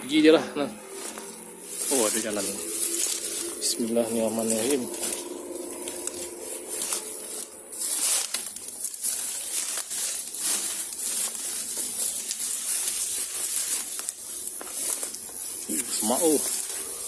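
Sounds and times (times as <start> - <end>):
steady high hiss: 0.0 - 17.0
brush rustling: 0.1 - 17.0
footsteps crunching in grass: 0.1 - 17.0.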